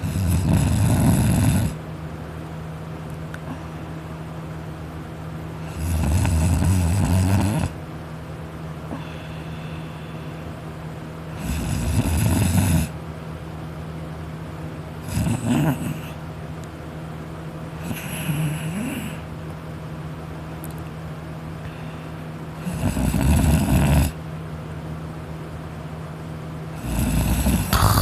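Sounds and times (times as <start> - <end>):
man snoring: 0.0 - 1.8, 5.7 - 7.8, 26.9 - 28.0
steady low hum: 0.0 - 5.8, 7.6 - 11.4, 27.6 - 28.0.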